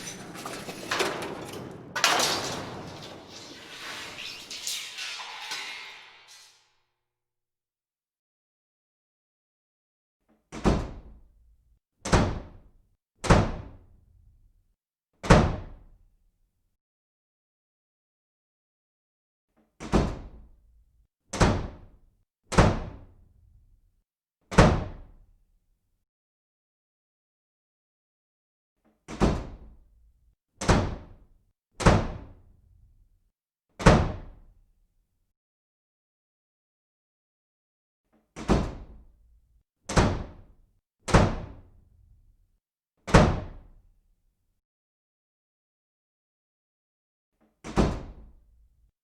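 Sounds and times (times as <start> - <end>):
heavy slams: 0.0 - 6.5.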